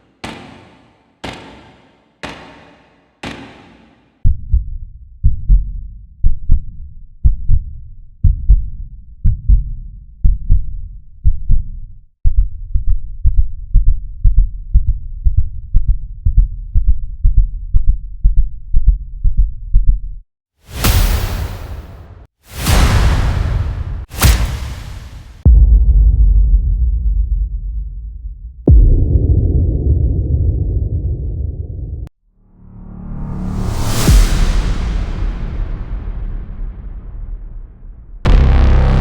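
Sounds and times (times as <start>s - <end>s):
heartbeat thumps: 4.2s - 20.0s, 25.4s - 32.1s.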